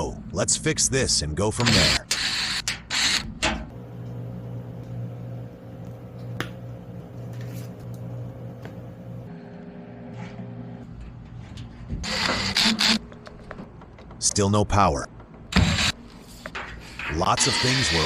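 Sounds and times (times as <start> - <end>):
steady low hum: 3.7 - 14.2.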